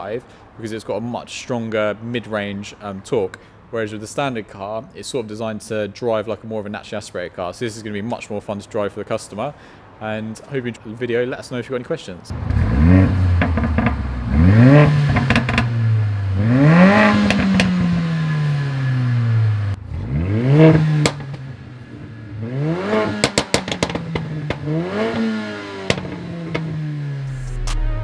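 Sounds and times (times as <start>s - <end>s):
exhaust pops and crackles: 12.3s - 18.0s, 20.6s - 21.5s, 23.1s - 28.0s
car engine revving: 12.3s - 28.0s.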